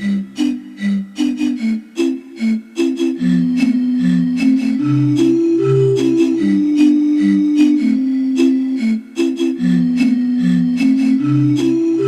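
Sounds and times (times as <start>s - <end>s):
melodic background music: 0.0s - 12.0s.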